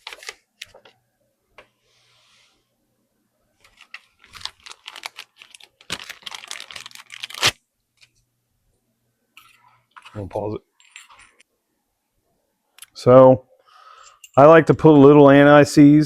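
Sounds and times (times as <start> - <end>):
packaging crinkling: 0.0 - 0.8, 3.6 - 8.1.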